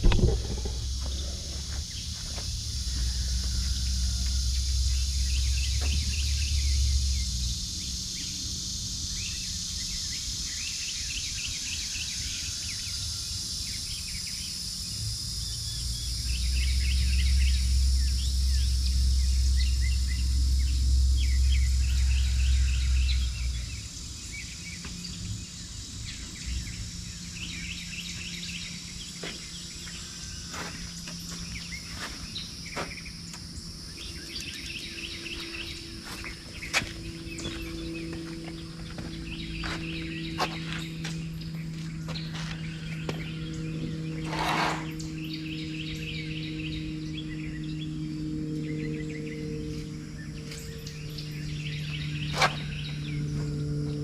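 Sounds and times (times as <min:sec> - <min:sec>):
low rumble: 0:00.0 - 0:03.0
birds chirping: 0:00.0 - 0:12.2, 0:13.5 - 0:54.0
insect drone: 0:00.0 - 0:54.0.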